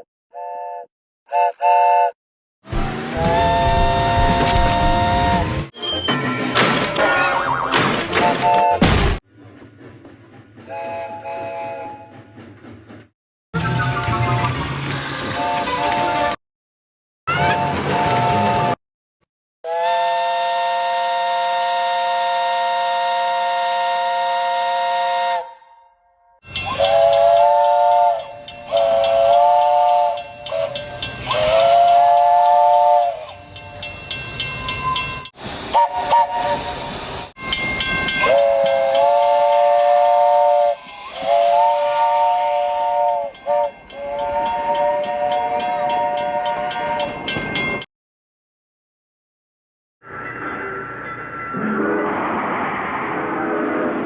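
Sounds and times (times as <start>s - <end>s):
train chime whistle blasts: 26.4s - 33.9s, 34.6s - 47.7s.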